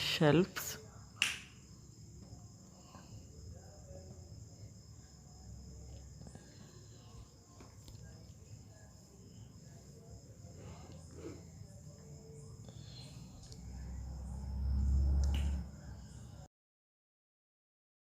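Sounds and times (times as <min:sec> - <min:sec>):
crickets trilling: 0:00.0 - 0:16.5
low rumble: 0:13.6 - 0:16.4.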